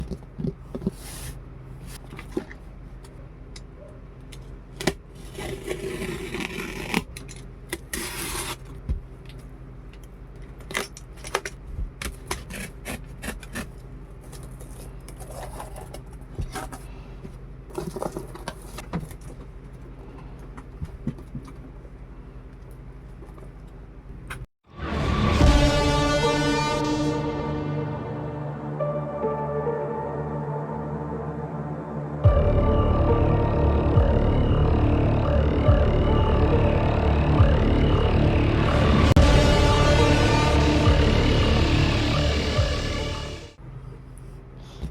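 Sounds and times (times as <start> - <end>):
packaging clicks and scrapes: 4.8 - 8.9, 10.4 - 17.1, 17.7 - 21.6
steady low hum: 6.8 - 44.9.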